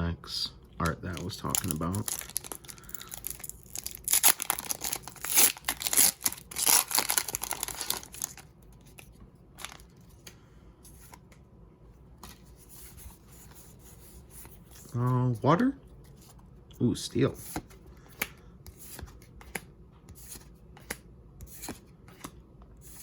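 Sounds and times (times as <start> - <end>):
foil wrapper tearing: 1.2 - 8.4.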